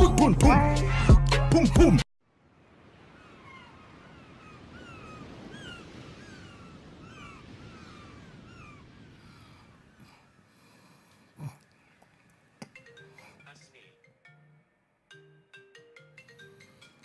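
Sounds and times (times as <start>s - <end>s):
birds chirping: 2.9s - 14.6s.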